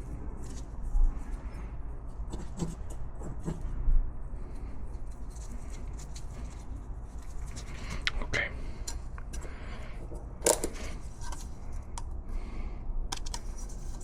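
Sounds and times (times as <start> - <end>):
steady low hum: 0.0 - 14.0
scratching and clicks on car parts: 8.8 - 12.1, 13.1 - 14.0.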